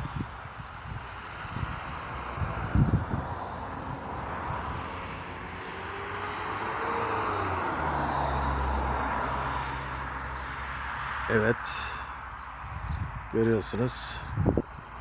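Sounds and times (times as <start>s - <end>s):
vehicle passing: 1.2s - 12.8s
low engine hum: 1.5s - 11.5s.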